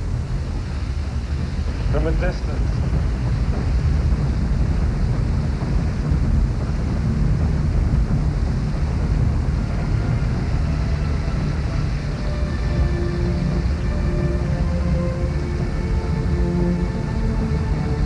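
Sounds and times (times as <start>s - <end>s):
waterfall roaring: 9.8s - 18.0s.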